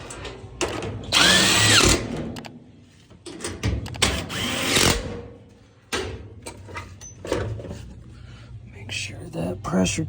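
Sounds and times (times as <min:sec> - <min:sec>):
power drill driving screw: 0:01.1 - 0:02.0, 0:04.1 - 0:05.0.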